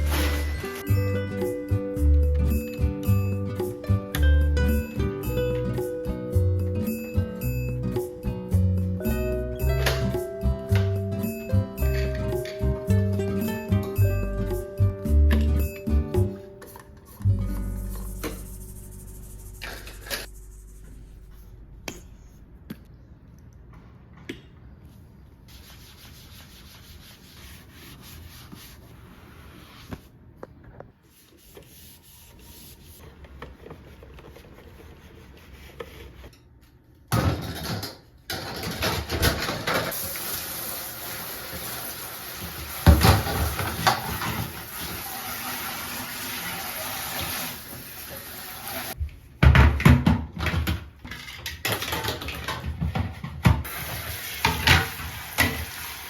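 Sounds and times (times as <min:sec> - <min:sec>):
rubbing and handling noises: 0:16.5 - 0:22.4, 0:24.9 - 0:36.4.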